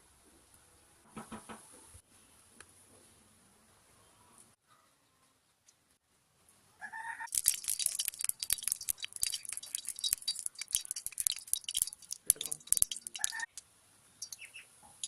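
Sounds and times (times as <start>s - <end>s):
hot oil sizzling in a pan: 7.3s - 13.6s.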